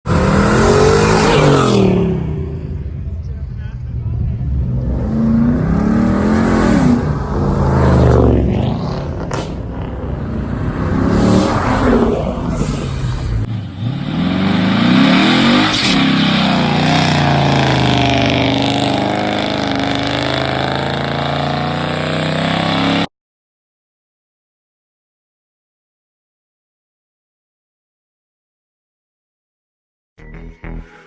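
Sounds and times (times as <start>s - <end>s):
car engines revving: 0.0s - 23.1s.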